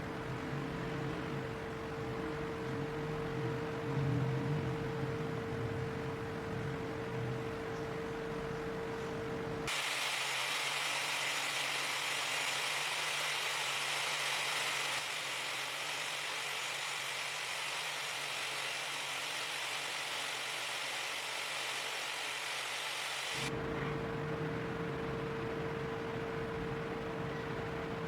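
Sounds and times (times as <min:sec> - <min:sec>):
steady hum with held tone: 0:00.0 - 0:28.0
steady hiss: 0:09.7 - 0:23.5.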